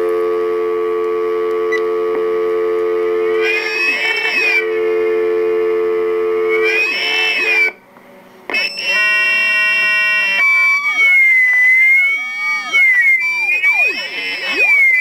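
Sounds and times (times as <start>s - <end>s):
phone electronic tones: 0.0s - 7.8s, 8.5s - 15.0s.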